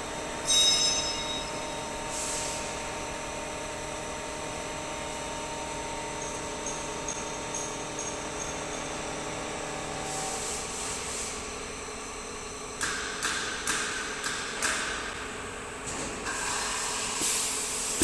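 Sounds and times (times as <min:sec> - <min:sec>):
machine electrical hum: 0:00.0 - 0:18.0
compressed air hiss: 0:02.1 - 0:02.8, 0:10.1 - 0:11.4, 0:16.3 - 0:18.0.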